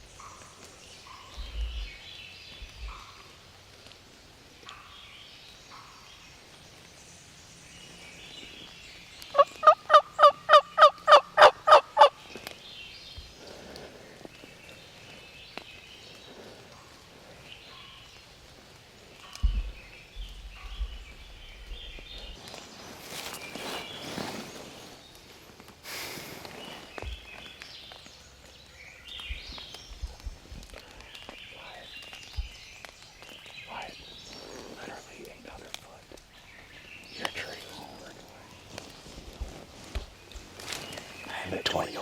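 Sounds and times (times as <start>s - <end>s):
small birds chirping: 0.0s - 42.0s
turkey calling: 9.3s - 12.2s.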